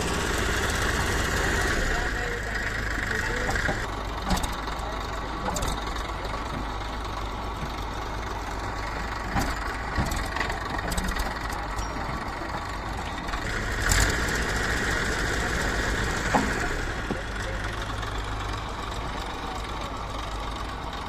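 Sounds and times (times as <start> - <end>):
heavy diesel engine running: 0.0 - 21.0.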